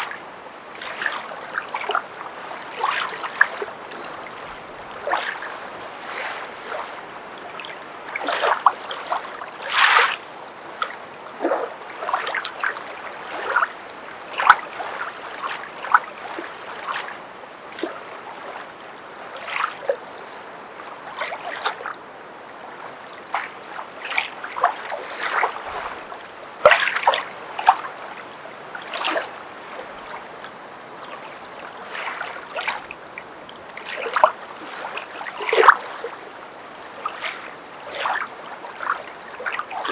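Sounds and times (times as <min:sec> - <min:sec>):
faint water hiss: 0:00.0 - 0:39.9
footsteps splashing in water: 0:23.4 - 0:28.2.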